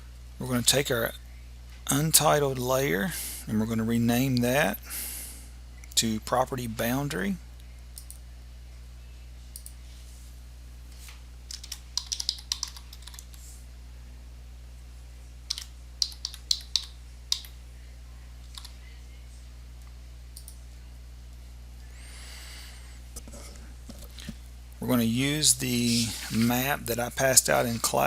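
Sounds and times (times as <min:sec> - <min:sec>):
steady low hum: 0:00.0 - 0:28.0
computer keyboard keystrokes: 0:11.5 - 0:13.4, 0:15.5 - 0:17.5, 0:18.5 - 0:18.7.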